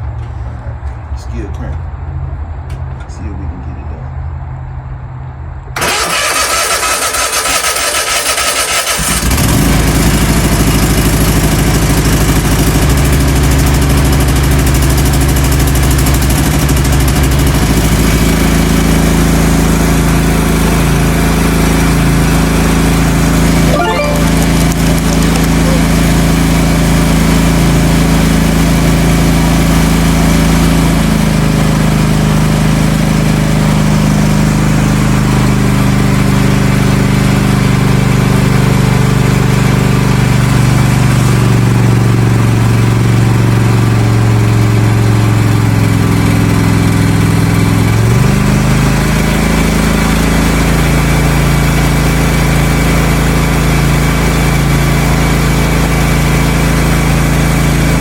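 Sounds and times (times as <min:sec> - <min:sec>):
mower engine running: 0:05.8 - 0:58.0.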